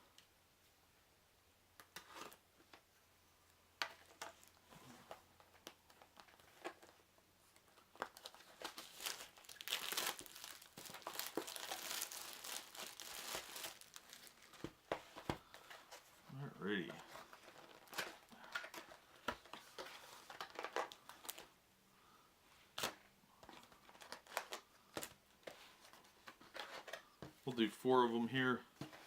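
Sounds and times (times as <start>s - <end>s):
packaging rustling and tapping: 7.8s - 15.8s, 17.1s - 21.5s
packaging crinkling and tearing: 7.9s - 14.7s, 17.1s - 21.5s, 22.8s - 25.2s.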